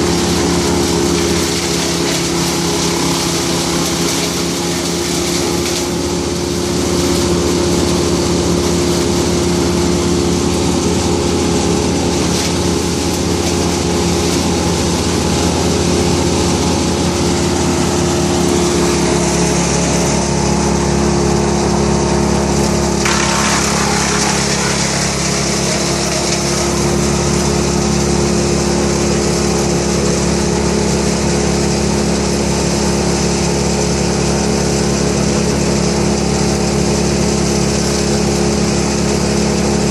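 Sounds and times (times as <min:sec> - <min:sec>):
small petrol engine running: 0:00.0 - 0:39.9.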